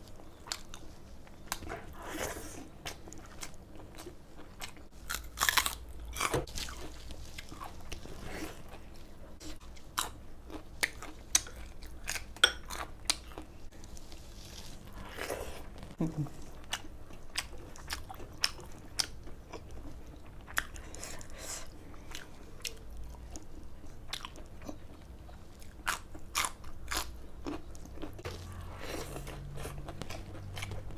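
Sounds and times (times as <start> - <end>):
person crunching food: 3.1 - 8.8, 25.6 - 30.9.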